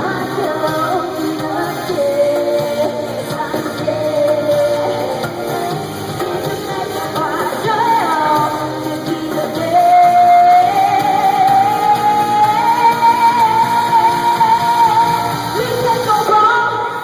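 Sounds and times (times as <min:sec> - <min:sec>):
live pop band: 0:00.0 - 0:17.0.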